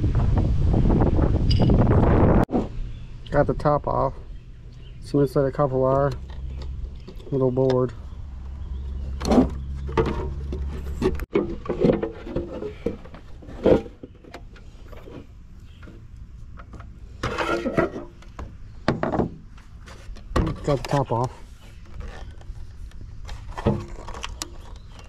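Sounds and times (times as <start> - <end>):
pump parts knocking and rattling: 5.6 - 22.5, 23.2 - 25.0.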